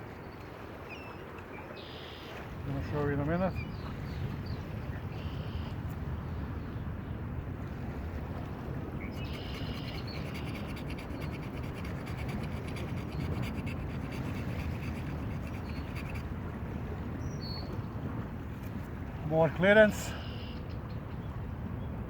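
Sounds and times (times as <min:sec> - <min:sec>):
low rush of wind: 0:00.0 - 0:22.0
wooden board being scraped: 0:09.2 - 0:16.2.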